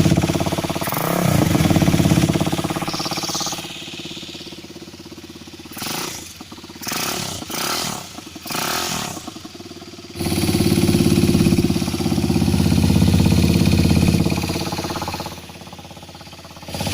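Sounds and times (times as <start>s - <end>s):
motorcycle engine revving: 0.0s - 16.9s.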